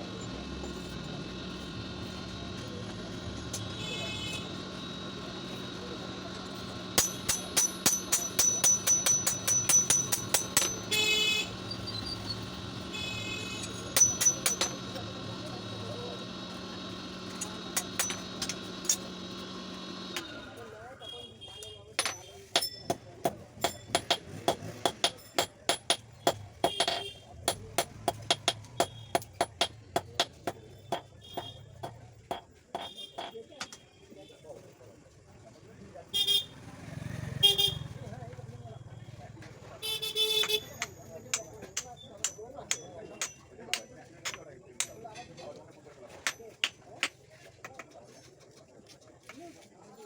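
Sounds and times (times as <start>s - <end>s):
hammer striking metal on anvil: 6.9s - 11.1s, 13.6s - 15.2s, 17.3s - 19.2s, 22.0s - 33.4s, 40.4s - 45.1s.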